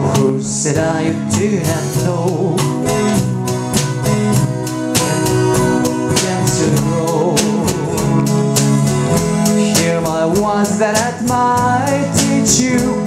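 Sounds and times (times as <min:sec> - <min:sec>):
person singing: 0:00.0 - 0:03.2, 0:05.8 - 0:13.0
acoustic guitar strumming: 0:00.0 - 0:13.0.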